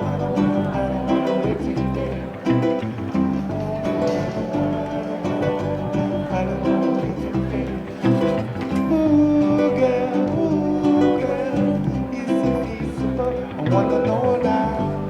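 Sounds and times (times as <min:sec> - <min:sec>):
hawaiian band music: 0:00.0 - 0:15.0
strummed acoustic guitars: 0:00.0 - 0:15.0.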